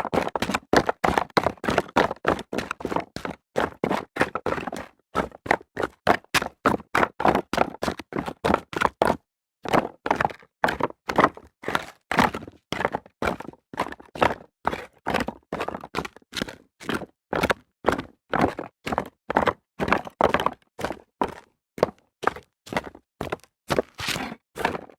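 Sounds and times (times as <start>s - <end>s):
footsteps running on rocks: 21.9s - 24.9s.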